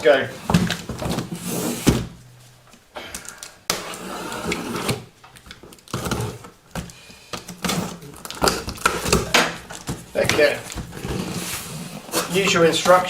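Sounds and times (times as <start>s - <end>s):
cardboard and paper rustling: 3.8s - 13.0s.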